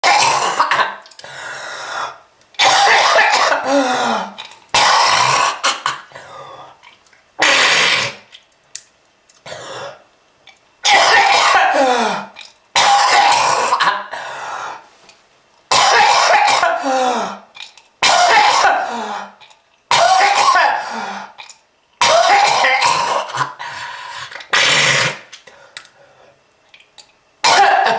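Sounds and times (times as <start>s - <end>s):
person coughing hard: 0.0s - 1.0s, 2.6s - 6.4s, 7.4s - 8.2s, 10.8s - 14.2s, 15.7s - 17.4s, 18.0s - 21.4s, 22.0s - 23.6s, 24.5s - 25.3s, 27.4s - 27.9s.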